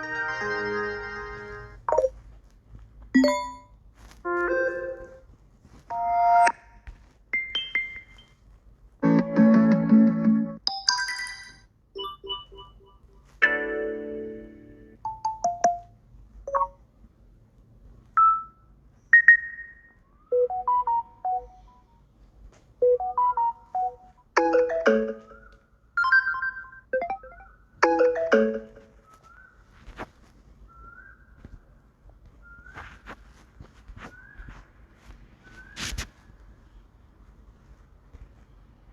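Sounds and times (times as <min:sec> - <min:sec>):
phone notification chimes: 0:03.2 - 0:03.7, 0:10.9 - 0:14.0, 0:20.4 - 0:21.9, 0:22.8 - 0:28.9.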